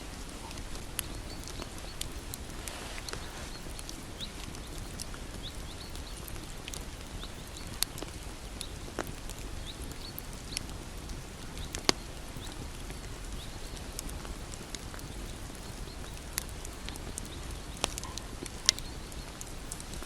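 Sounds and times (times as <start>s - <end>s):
bonfire crackling: 0.0s - 20.0s
sharp fire pops: 0.1s - 20.0s.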